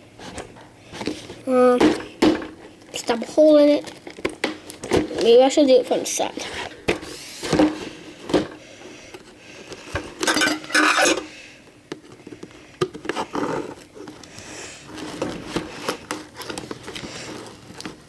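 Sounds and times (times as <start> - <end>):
knife scraping plastic packaging: 10.2 - 11.3, 14.9 - 18.0.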